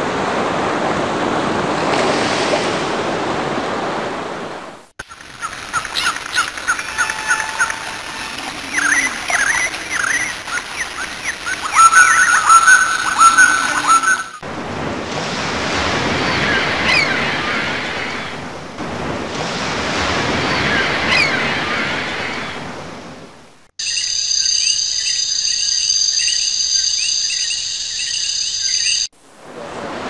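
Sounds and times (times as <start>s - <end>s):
ocean surf waves: 0.0s - 23.7s, 29.1s - 30.0s
birds chirping: 5.0s - 14.4s.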